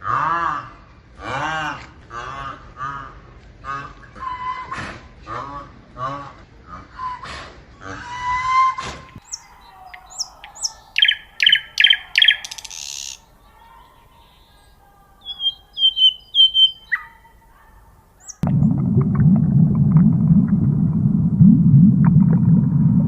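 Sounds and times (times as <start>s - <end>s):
honking calls: 7.9s - 18.4s
small bird chirping: 9.2s - 17.6s, 18.2s - 18.4s.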